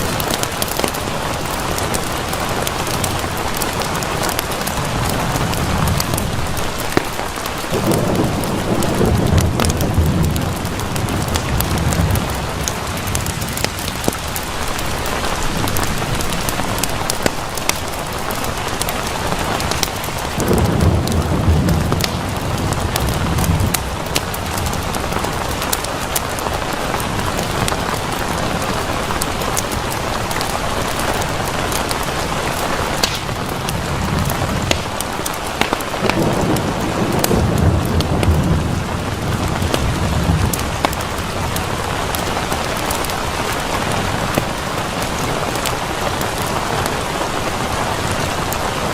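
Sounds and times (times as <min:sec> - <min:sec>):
sharp drips and ticks: 0:00.0 - 0:47.2
steady rain: 0:00.0 - 0:48.9
low rolls of thunder: 0:03.5 - 0:16.8, 0:20.3 - 0:25.6, 0:31.9 - 0:42.6.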